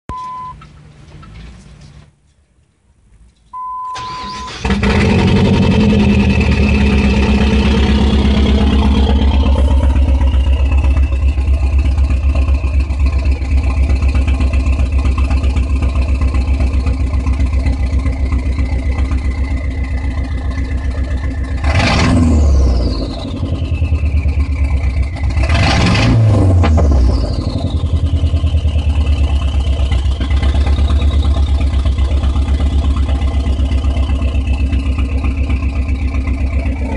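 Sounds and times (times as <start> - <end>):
steady beep: 0.1 - 0.6, 3.6 - 4.4, 8.7 - 13.4
car engine idling: 0.3 - 36.9
car engine cranking and starting: 3.2 - 36.9
engine revving with whine: 3.9 - 36.9.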